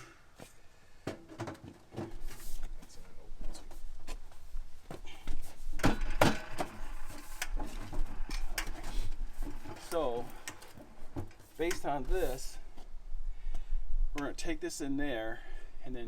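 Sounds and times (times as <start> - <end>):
knocks and clunks of parts handled: 0.0 - 2.9, 4.9 - 11.9.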